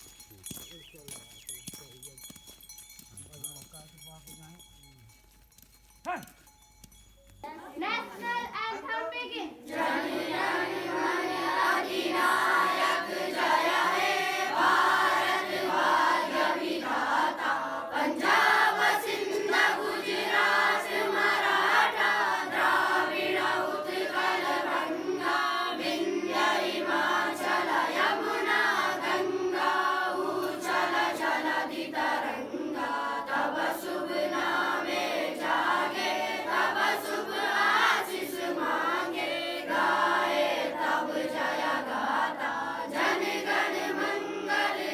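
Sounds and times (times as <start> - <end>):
group of voices chanting: 9.6 - 44.9.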